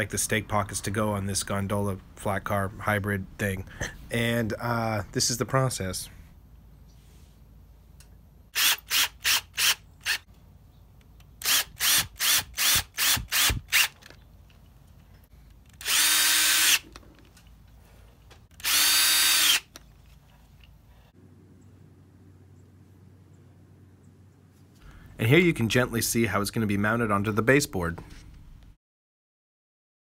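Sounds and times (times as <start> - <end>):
power drill whining: 11.4 - 14.1, 15.7 - 17.0, 18.5 - 19.8.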